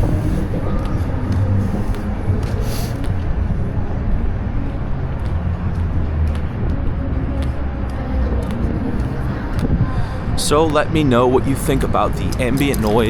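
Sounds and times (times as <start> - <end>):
passing traffic: 0.0 - 13.0
wind rumble on microphone: 0.0 - 13.0
light clicks: 12.2 - 13.0.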